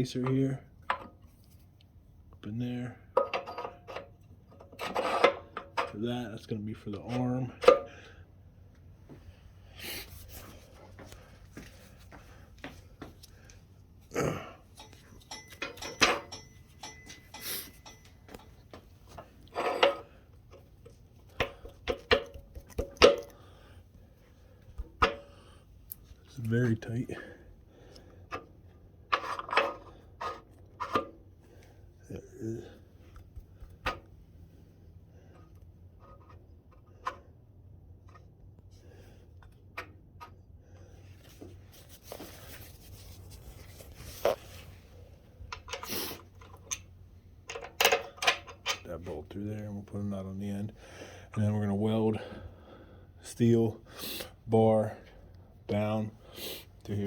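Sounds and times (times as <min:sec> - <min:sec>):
low steady hum: 0:00.0 - 0:57.0
scraping metallic rattle: 0:14.7 - 0:18.6
steel parts knocking and ringing: 0:14.7 - 0:18.8.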